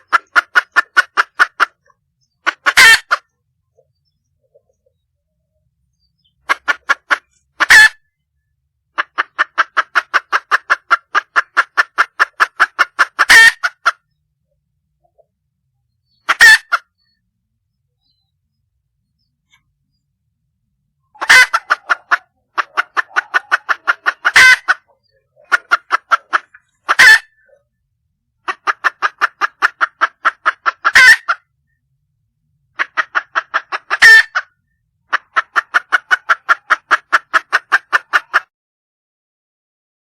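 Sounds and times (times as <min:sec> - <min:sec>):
hen clucking rapidly: 0:00.0 - 0:05.0, 0:05.9 - 0:08.2, 0:08.9 - 0:14.2, 0:16.1 - 0:17.2, 0:21.0 - 0:27.7, 0:28.4 - 0:31.6, 0:32.7 - 0:38.5.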